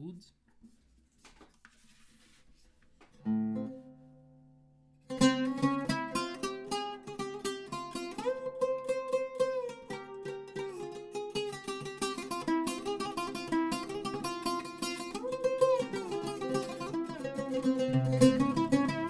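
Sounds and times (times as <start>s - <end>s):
oud played solo: 5.0s - 19.0s.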